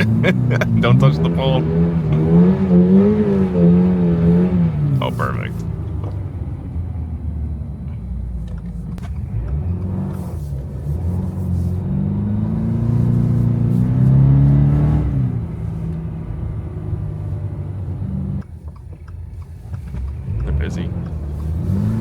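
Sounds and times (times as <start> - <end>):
car engine revving: 0.0 - 22.0.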